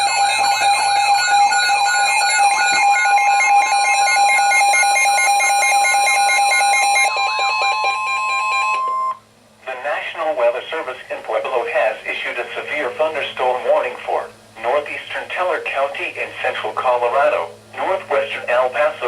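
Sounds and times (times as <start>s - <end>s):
warbling tone: 0.0s - 9.2s
steady electronic alarm tones: 0.0s - 9.3s.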